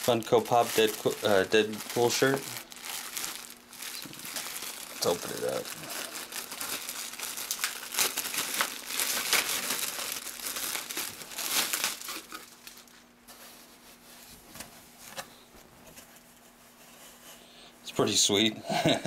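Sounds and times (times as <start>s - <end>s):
plastic wrapping crinkling: 0.0s - 15.3s.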